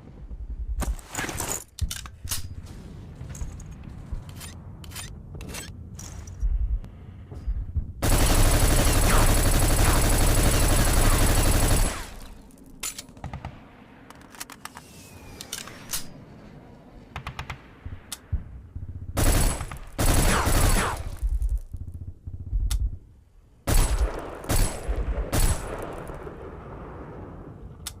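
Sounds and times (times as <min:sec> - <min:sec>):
automatic rifle fire: 0:08.0 - 0:12.2.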